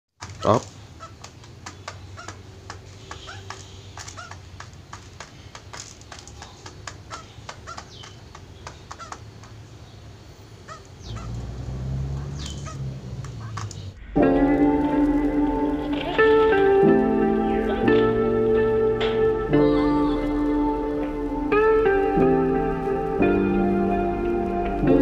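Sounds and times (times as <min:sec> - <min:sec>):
dove giving short sharp calls: 0:00.3 - 0:04.7, 0:06.2 - 0:09.3
music: 0:14.0 - 0:25.0.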